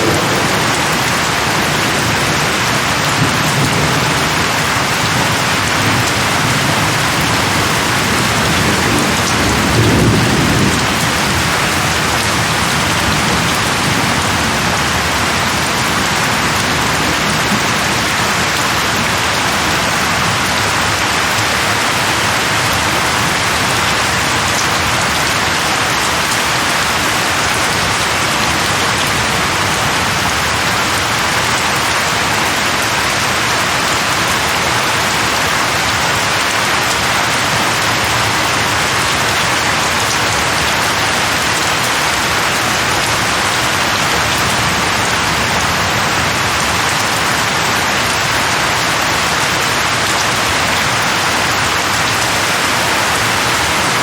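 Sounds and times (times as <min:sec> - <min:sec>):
thunder rumbling: 0:00.0 - 0:32.3
steady rain: 0:00.0 - 0:54.0.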